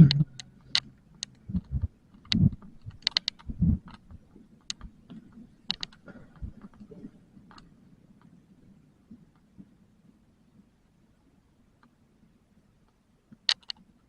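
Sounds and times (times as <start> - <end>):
sharp clicks: 0.0 - 4.9, 5.7 - 6.8, 13.5 - 13.8
soft low thumps: 1.5 - 5.0, 6.1 - 6.7.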